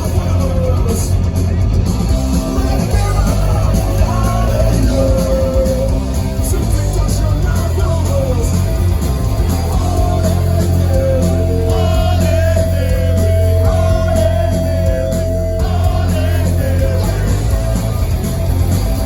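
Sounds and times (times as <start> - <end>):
electric guitars: 0.0 - 19.0
punk rock band playing live: 0.0 - 19.0
person singing: 9.8 - 17.5.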